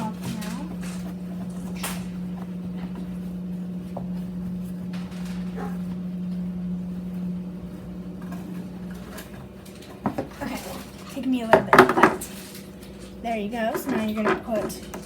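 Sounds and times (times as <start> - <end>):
low hum: 0.0 - 9.2.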